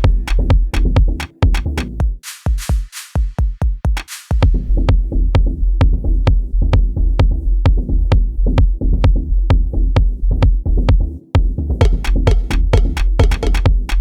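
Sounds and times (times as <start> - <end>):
drum-machine hits: 0.0 - 8.2, 9.5 - 14.0
deep sustained bass: 4.4 - 13.7.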